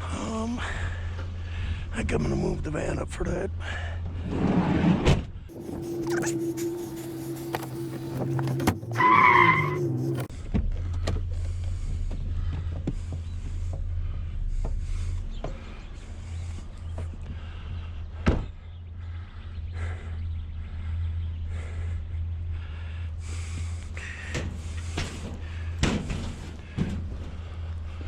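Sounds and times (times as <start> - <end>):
van engine rumbling: 5.4 - 28.0.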